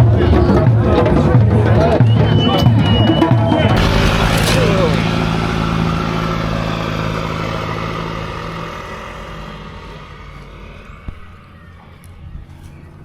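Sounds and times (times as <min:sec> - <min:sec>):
vehicle engine hum: 0:03.7 - 0:13.0.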